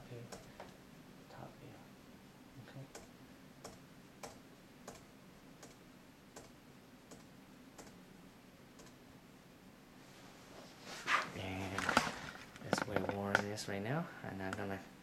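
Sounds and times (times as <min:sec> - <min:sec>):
faint clicks: 0:08.8 - 0:09.0.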